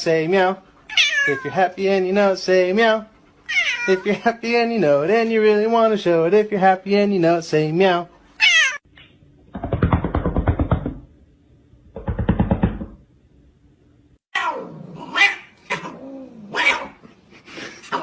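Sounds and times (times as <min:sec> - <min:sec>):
cat meowing: 0:00.9 - 0:01.6, 0:03.5 - 0:04.1, 0:08.4 - 0:08.8.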